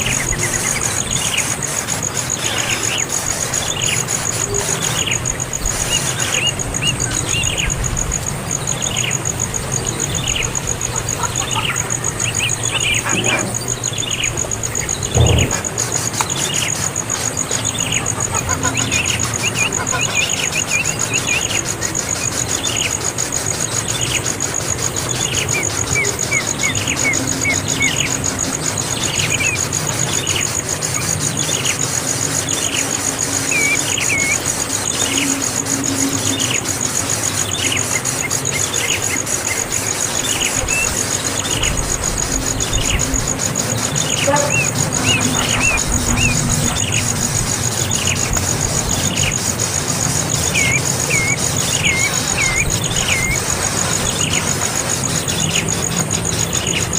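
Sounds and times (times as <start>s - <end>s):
young bird chirping: 10.0s - 16.8s, 50.4s - 54.5s.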